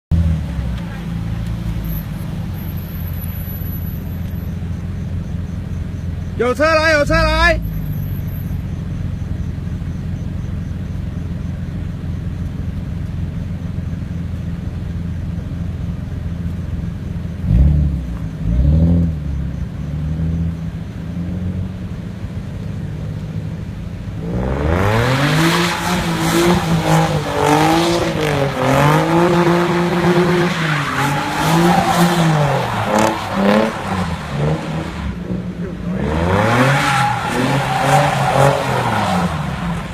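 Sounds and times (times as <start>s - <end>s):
car engine revving: 17.1s - 39.9s
tyres squealing: 25.6s - 39.9s.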